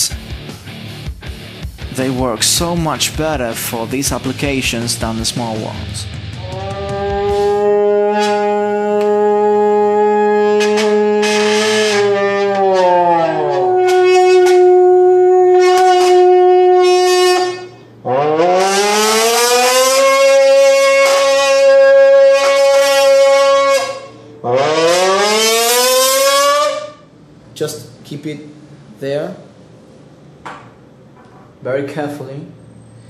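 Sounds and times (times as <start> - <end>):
voice buzzing into a can: 5.8 - 17.5.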